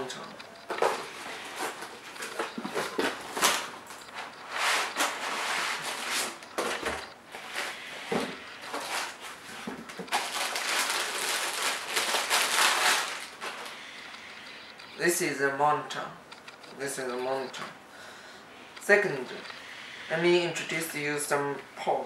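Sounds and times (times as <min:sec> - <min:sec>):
packaging rustling and crinkling: 0:00.7 - 0:14.2.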